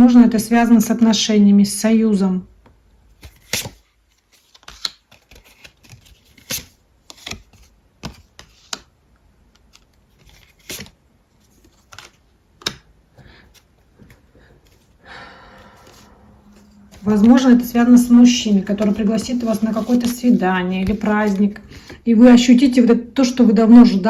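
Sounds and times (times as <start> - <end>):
cards clicking and tapping: 4.4 - 8.9, 11.5 - 13.3, 18.8 - 21.9.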